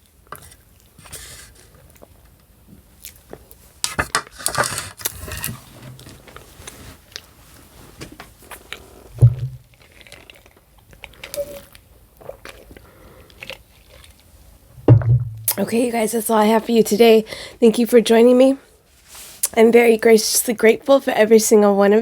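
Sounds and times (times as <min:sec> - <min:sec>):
loud low thump: 0:09.2 - 0:09.6, 0:14.8 - 0:15.5.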